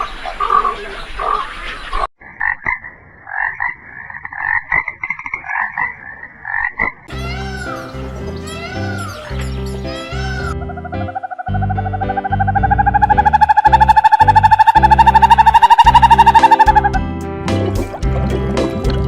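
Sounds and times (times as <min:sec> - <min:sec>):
frogs croaking: 0:00.0 - 0:07.1, 0:10.5 - 0:17.0
animal call: 0:07.1 - 0:17.0
music with chirping sounds: 0:07.1 - 0:19.0.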